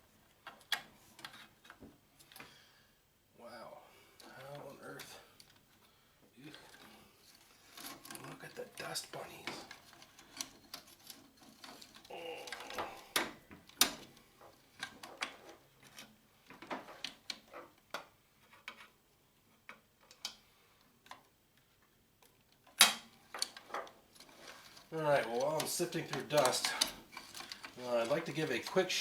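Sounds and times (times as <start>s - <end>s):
small metal parts clicking: 6.5s - 14.1s.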